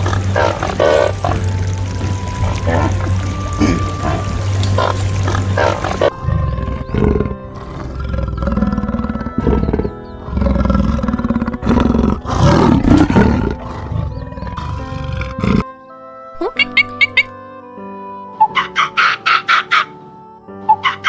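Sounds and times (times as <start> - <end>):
lion roaring: 0.0 - 15.7
background music: 0.0 - 21.0.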